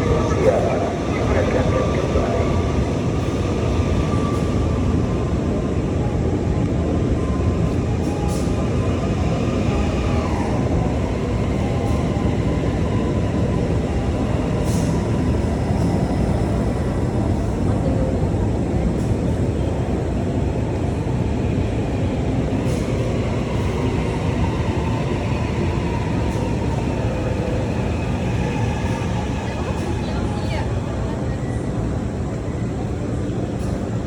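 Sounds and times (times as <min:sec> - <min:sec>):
light-rail train rumbling: 0:00.0 - 0:34.0.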